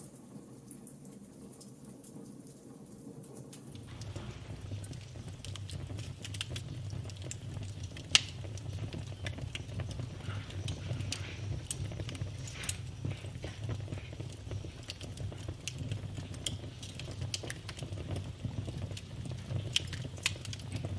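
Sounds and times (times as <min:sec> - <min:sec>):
campfire crackling: 0:03.3 - 0:20.9
loud fire pops: 0:03.7 - 0:20.9
low rumble: 0:03.8 - 0:14.0.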